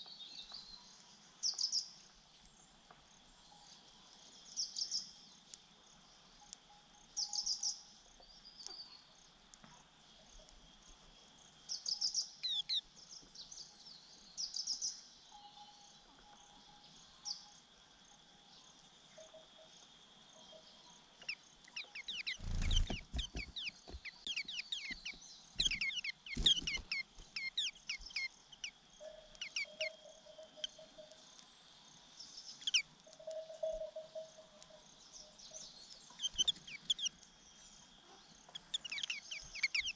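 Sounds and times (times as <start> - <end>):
bird chicks chirping: 11.8 - 12.9, 21.2 - 31.4, 32.2 - 34.1, 35.3 - 39.9.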